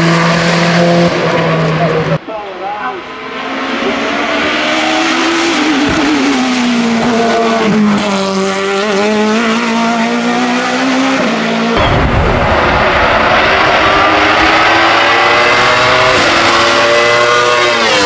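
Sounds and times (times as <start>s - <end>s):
race car engine at high revs: 0.0s - 18.0s.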